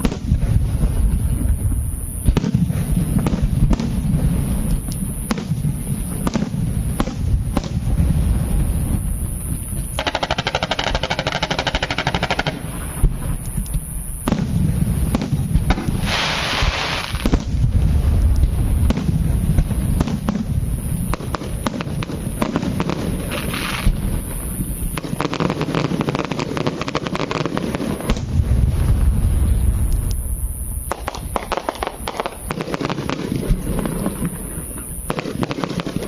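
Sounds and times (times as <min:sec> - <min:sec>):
steady low rumble: 0:00.0 - 0:10.0, 0:17.2 - 0:23.3, 0:28.0 - 0:32.5
fireworks crackling and banging: 0:00.0 - 0:36.0.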